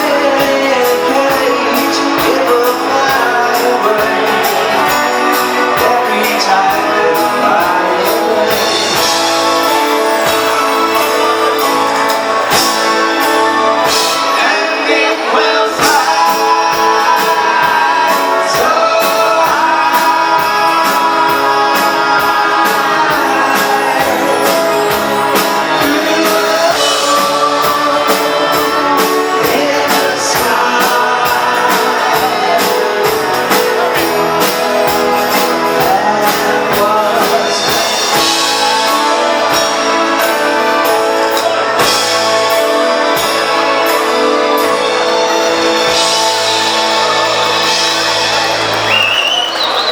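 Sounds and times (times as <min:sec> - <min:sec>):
band playing a song: 0:00.0 - 0:49.9
person singing: 0:00.0 - 0:49.9.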